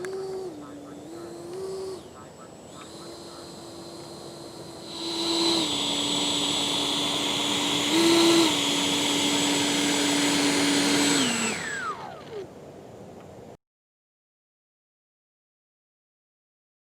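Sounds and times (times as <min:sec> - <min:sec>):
electric ducted fan whining: 0:00.0 - 0:13.5.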